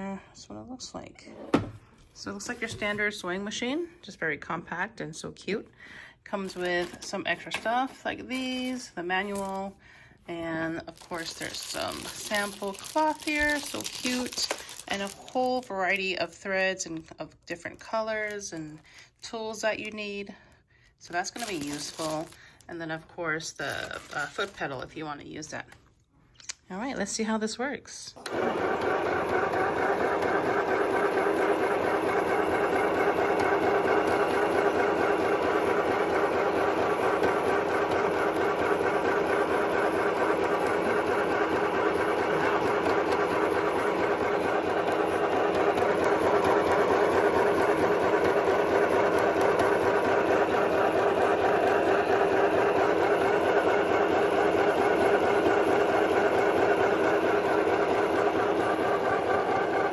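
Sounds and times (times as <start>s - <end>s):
sewing machine needle rattling: 28.2s - 59.9s.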